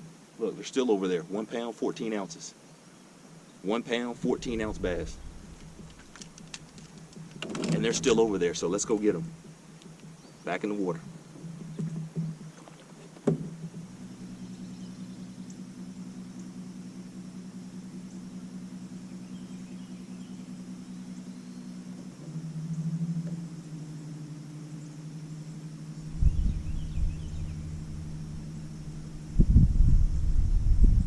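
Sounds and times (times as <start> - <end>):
wind rumbling on microphone: 3.9 - 15.4, 25.9 - 31.0
electric trolling motor humming: 4.2 - 30.9.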